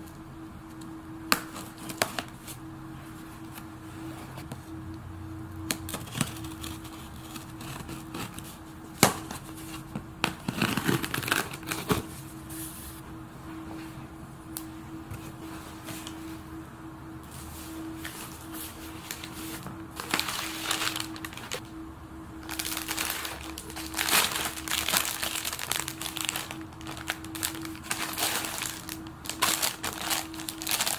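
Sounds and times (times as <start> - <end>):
low hum: 0.0 - 30.9
packaging crinkling: 5.8 - 12.2, 18.0 - 21.7, 22.4 - 30.9
packaging clicks and knocks: 22.5 - 30.9.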